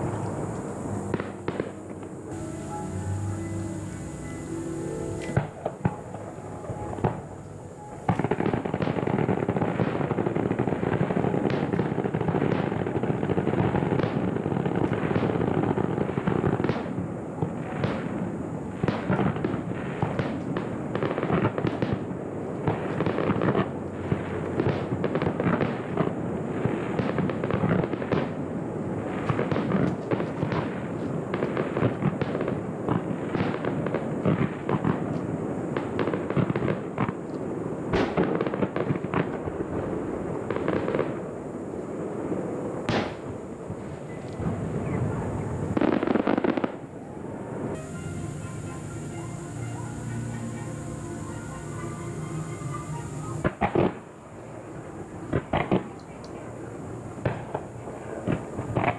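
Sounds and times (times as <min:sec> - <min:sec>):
fireworks bangs and crackling: 0:00.0 - 0:58.9.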